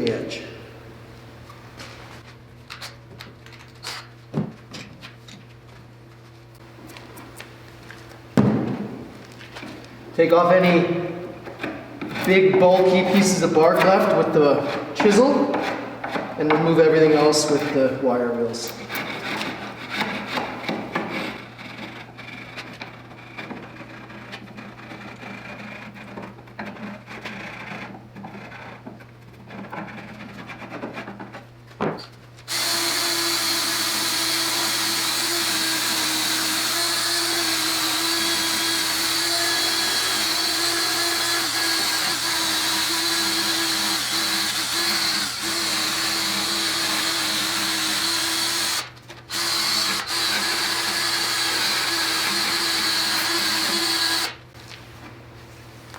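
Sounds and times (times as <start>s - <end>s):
wire wheel power tool whine: 32.5s - 54.4s.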